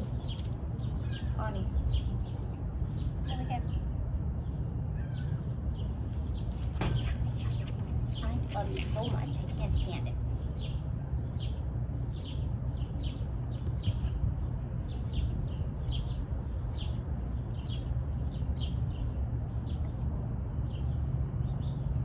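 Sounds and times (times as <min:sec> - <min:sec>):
small birds chirping: 0:00.0 - 0:22.0
steady low rumble: 0:00.0 - 0:22.0.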